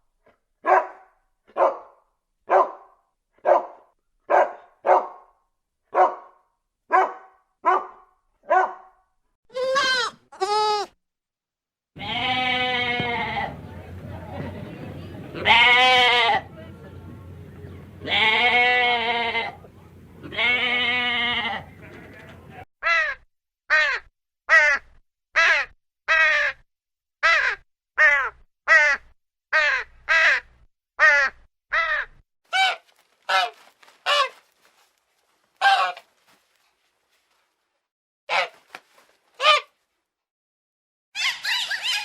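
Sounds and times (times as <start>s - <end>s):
farm animal bleating: 9.5s - 11.0s, 12.0s - 13.7s, 15.4s - 16.5s, 18.0s - 22.3s.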